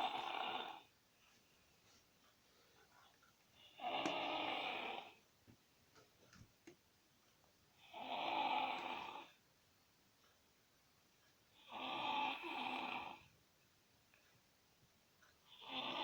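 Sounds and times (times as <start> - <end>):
toddler snoring: 0.0 - 0.9, 3.7 - 5.2, 7.8 - 9.4, 11.6 - 13.3, 15.5 - 16.0.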